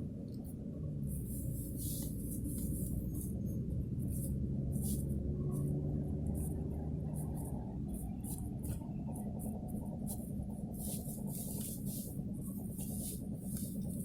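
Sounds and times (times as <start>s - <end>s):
car engine rumbling: 0.0s - 14.0s.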